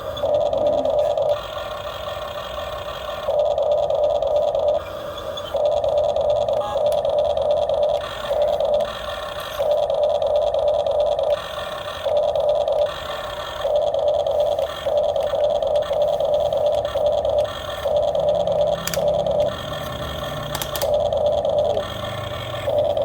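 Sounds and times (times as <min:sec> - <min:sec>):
small electric motor and pump whining: 0:00.0 - 0:23.0
sharp clicks: 0:16.6 - 0:23.0.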